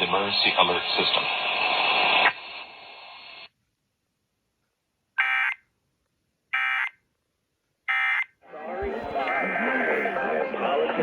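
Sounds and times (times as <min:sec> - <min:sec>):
faint radio broadcast: 0:00.0 - 0:03.5, 0:08.2 - 0:11.0.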